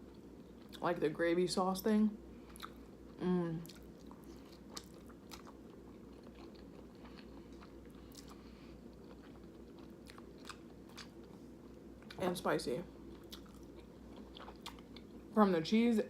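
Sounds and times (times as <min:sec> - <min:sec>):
low steady hum: 0:00.0 - 0:16.0
person chewing food: 0:02.4 - 0:12.2, 0:13.0 - 0:15.3.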